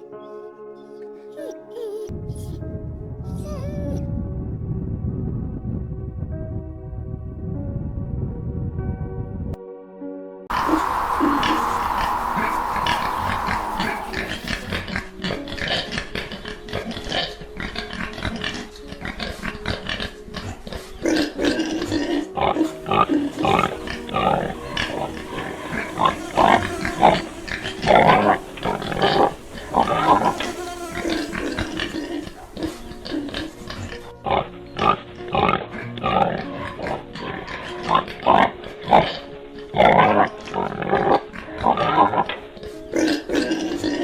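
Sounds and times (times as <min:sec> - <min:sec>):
dog whining: 0:00.3 - 0:02.1.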